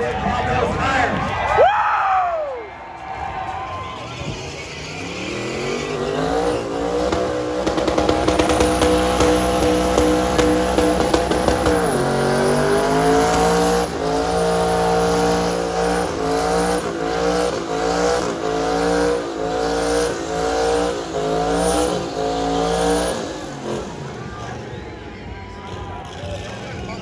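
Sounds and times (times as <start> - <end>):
tires spinning: 0.0 - 27.0
truck engine revving hard: 3.2 - 27.0.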